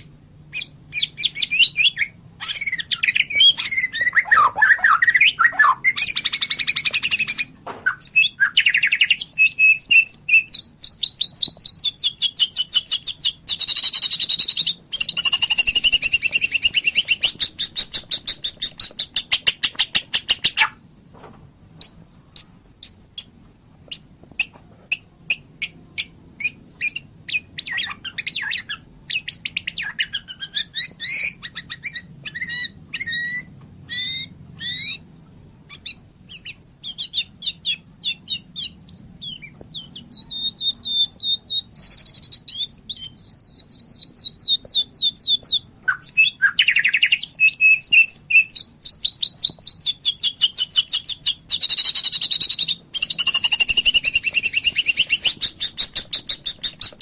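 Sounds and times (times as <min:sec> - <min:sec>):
bird singing trills and whistles: 0:00.0 - 0:21.0, 0:23.9 - 0:57.0.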